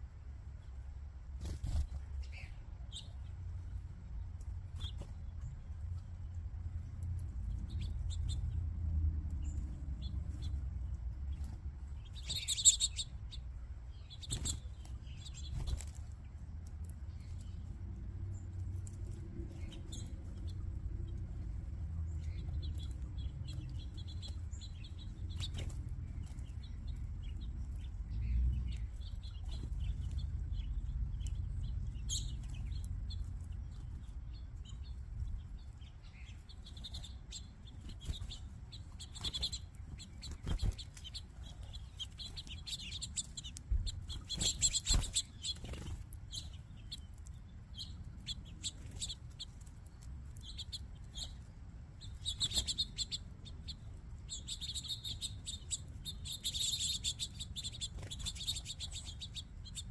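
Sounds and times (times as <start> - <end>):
small birds chirping: 0.0 - 59.9
steady low rumble: 0.0 - 59.9
wings fluttering: 1.3 - 3.1, 14.1 - 17.5, 22.4 - 27.1, 36.4 - 47.4, 52.1 - 53.2, 54.4 - 59.9.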